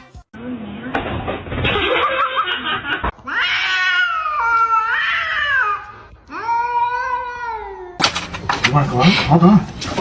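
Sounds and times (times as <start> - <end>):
cat yowling: 3.2 - 8.0.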